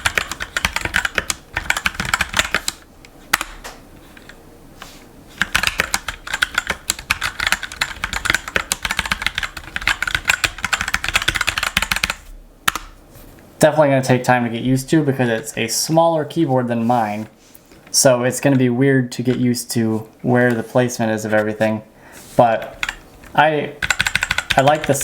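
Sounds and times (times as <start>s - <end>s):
mechanical keyboard typing: 0.0s - 3.6s, 5.4s - 12.9s, 22.6s - 23.0s, 23.8s - 25.0s.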